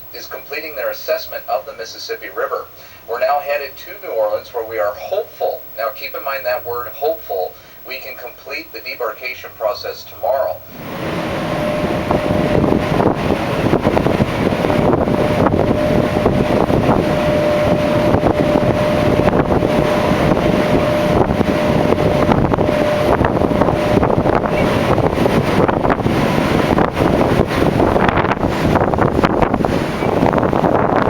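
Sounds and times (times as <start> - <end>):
faint steady hum: 0.0 - 28.1
wind buffeting microphone: 10.4 - 31.0.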